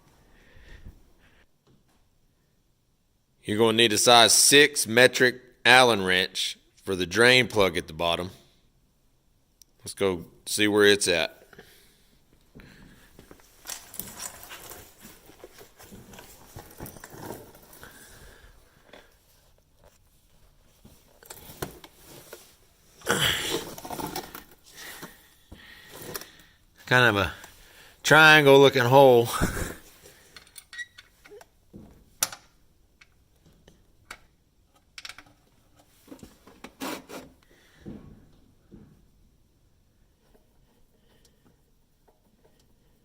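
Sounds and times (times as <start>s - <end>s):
faint handling knocks and rustling: 11.4s - 23.0s, 29.4s - 32.3s, 33.1s - 39.4s.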